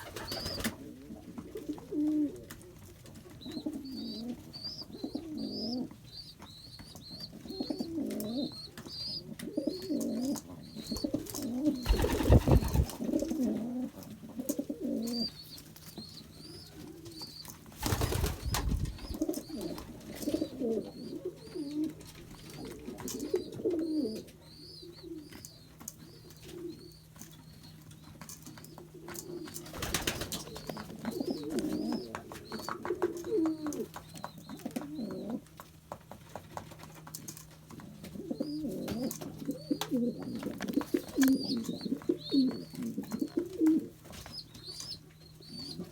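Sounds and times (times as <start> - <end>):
wings flapping: 0.0 - 0.8, 10.9 - 13.4, 17.8 - 19.2, 29.6 - 30.8
pigeons cooing: 0.0 - 6.1, 7.1 - 15.4, 16.5 - 25.5, 28.7 - 35.5, 37.8 - 45.9.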